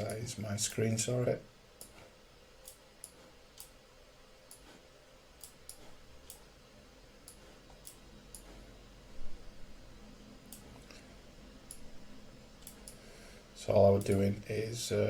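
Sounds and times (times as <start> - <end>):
computer mouse clicking: 1.8 - 2.0, 2.6 - 3.8, 4.5 - 4.8, 5.4 - 6.5, 7.2 - 8.7, 11.7 - 11.9, 12.6 - 13.0, 14.0 - 14.3.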